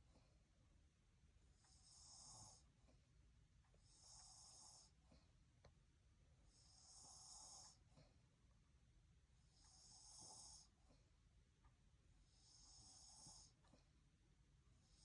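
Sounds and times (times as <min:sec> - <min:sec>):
man snoring softly: 0:01.6 - 0:02.7, 0:03.8 - 0:05.0, 0:06.5 - 0:07.9, 0:09.5 - 0:10.8, 0:12.3 - 0:13.6, 0:14.8 - 0:15.0.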